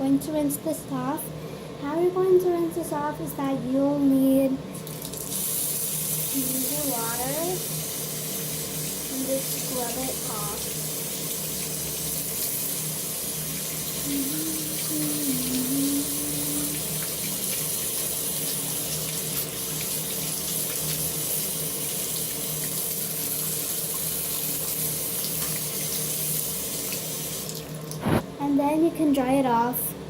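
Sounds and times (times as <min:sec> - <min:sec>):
sink tap running: 0:04.8 - 0:28.2
rubber stamp scrubbed under water: 0:28.0 - 0:28.3.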